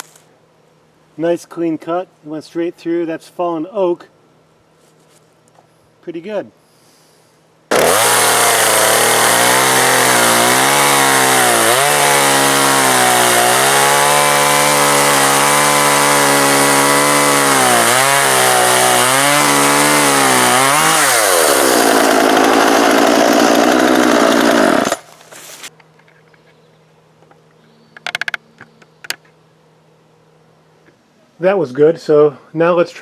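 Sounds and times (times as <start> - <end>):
chainsaw cutting through log: 7.7 - 25.2.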